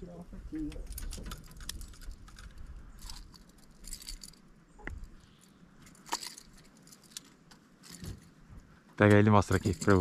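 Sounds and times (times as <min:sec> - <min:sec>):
fishing tackle clinking: 0:05.8 - 0:08.3.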